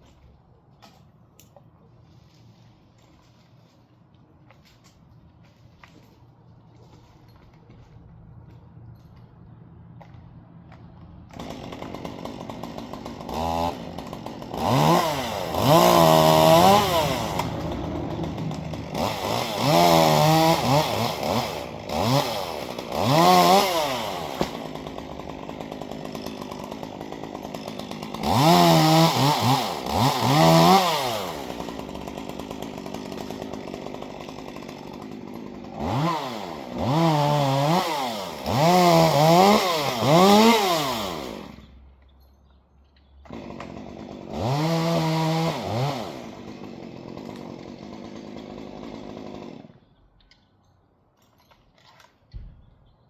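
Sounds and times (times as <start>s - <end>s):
chainsaw engine revving: 11.3s - 41.8s, 43.2s - 49.8s.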